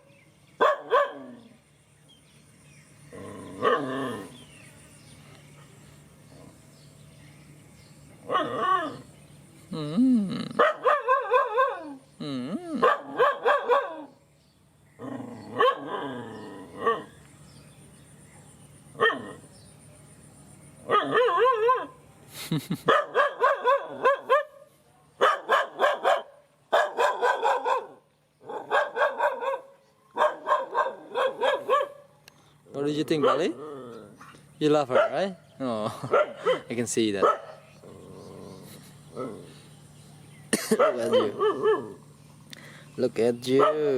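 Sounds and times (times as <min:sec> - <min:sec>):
dog barking: 0:00.6 - 0:01.5, 0:03.6 - 0:04.0, 0:08.2 - 0:09.0, 0:10.6 - 0:12.0, 0:12.8 - 0:14.2, 0:15.5 - 0:16.0, 0:19.0 - 0:19.4, 0:20.8 - 0:22.0, 0:22.9 - 0:32.2, 0:33.0 - 0:33.6, 0:34.8 - 0:35.4, 0:36.0 - 0:37.7, 0:40.7 - 0:42.0, 0:43.5 - 0:43.9.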